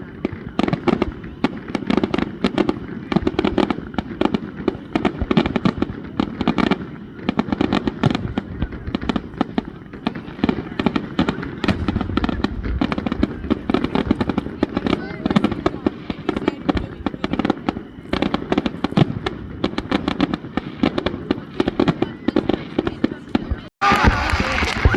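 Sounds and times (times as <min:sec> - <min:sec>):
fireworks bangs and crackles: 0:00.0 - 0:24.9
low rumble: 0:11.7 - 0:14.5.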